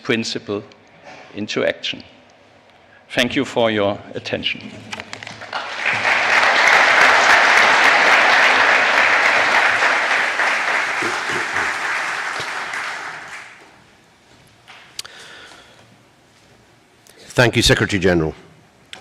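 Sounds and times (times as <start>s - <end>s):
audience applause: 5.3s - 13.7s.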